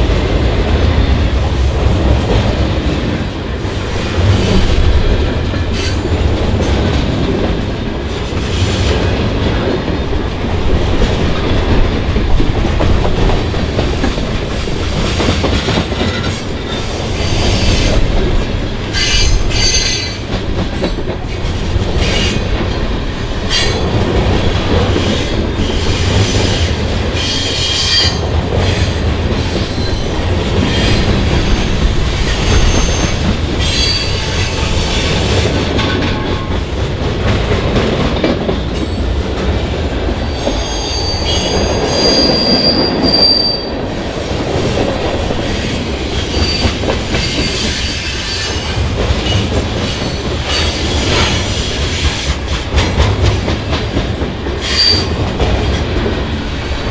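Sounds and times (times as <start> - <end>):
freight cars rumbling and clacking: 0.0 - 56.9
high-pitched wheel squeals: 32.5 - 34.2, 40.3 - 43.8.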